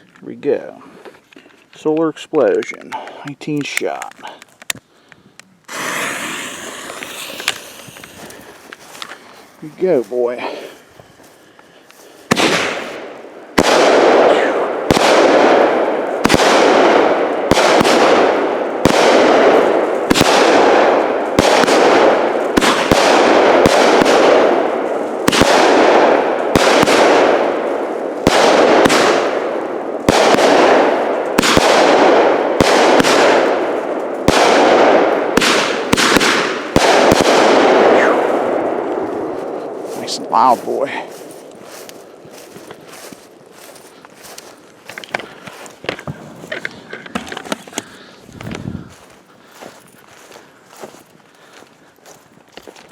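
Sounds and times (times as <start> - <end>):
firework cake shots cracking and bursting: 5.7 - 8.5, 12.3 - 38.6.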